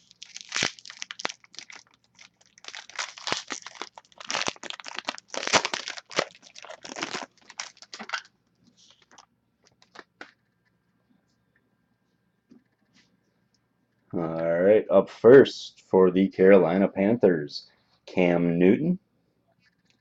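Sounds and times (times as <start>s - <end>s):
wrapper tearing and crinkling: 0.0s - 10.1s.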